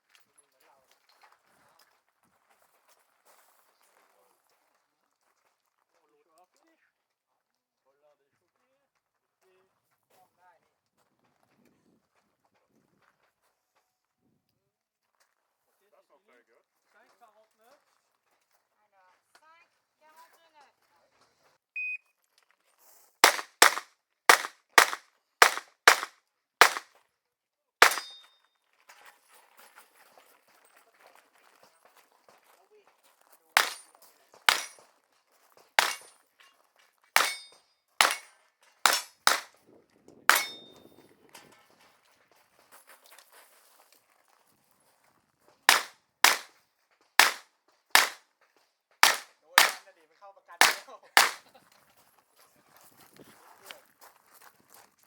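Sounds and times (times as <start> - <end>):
revolver gunshots: 23.2 - 26.8, 27.8 - 28.2, 33.6 - 33.8, 34.5 - 34.7, 35.8 - 36.0, 37.2 - 37.4, 38.0 - 38.3, 38.9 - 39.5, 40.3 - 40.6, 45.7 - 46.5, 47.2 - 47.4, 48.0 - 48.2, 49.0 - 49.8, 50.6 - 51.4.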